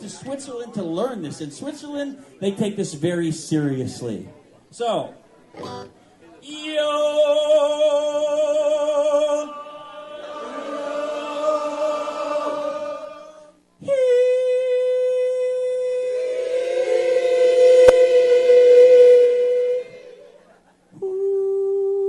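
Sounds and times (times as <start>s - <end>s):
man yodeling: 6.5s - 10.2s, 13.8s - 20.2s, 21.0s - 22.0s
audience singing: 9.4s - 13.6s, 16.3s - 20.5s.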